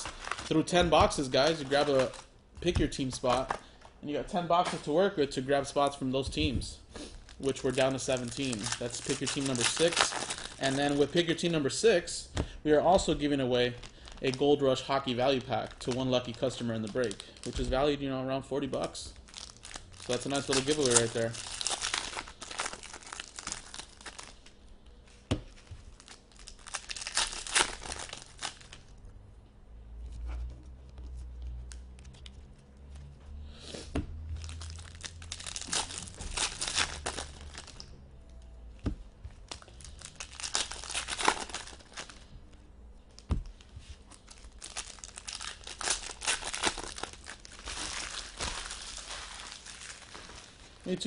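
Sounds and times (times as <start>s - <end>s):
card pack wrappers tearing and crinkling: 0.0s - 2.3s, 7.0s - 11.4s, 12.9s - 17.7s, 18.6s - 24.5s, 25.5s - 28.9s, 34.4s - 37.9s, 39.5s - 42.3s, 43.5s - 51.0s.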